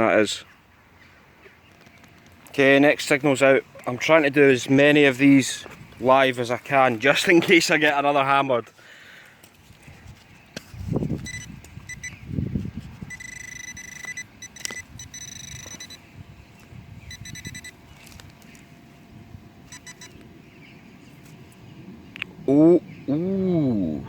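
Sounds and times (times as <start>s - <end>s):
metal detector beeping: 11.1s - 12.3s, 13.0s - 18.6s, 19.6s - 20.2s.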